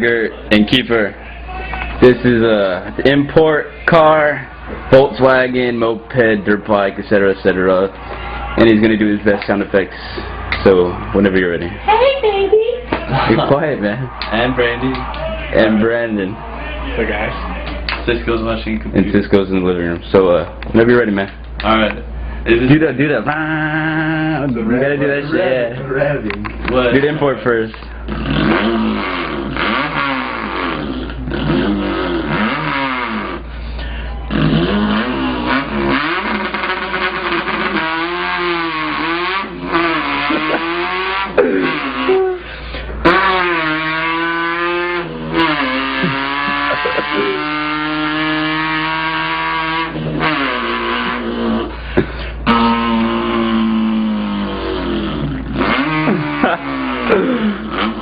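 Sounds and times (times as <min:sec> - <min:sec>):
man imitating car engine: 0:22.5 - 0:25.7, 0:28.0 - 0:33.6, 0:34.2 - 0:58.0.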